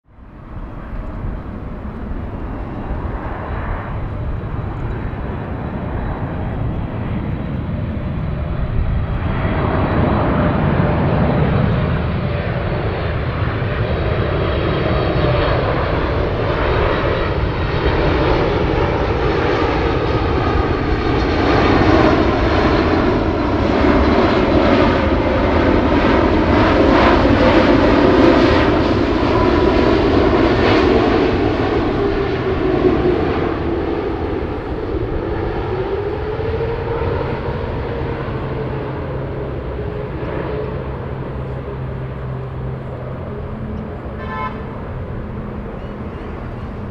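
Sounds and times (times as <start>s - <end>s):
jet engine roar: 0.1s - 46.9s
falling engine tone: 15.2s - 46.9s.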